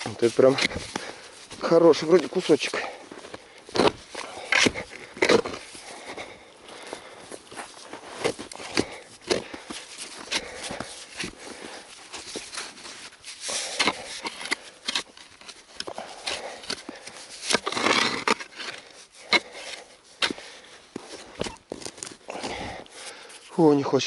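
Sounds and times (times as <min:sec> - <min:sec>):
shovel knocking and scraping: 0:00.0 - 0:05.8, 0:12.2 - 0:23.2.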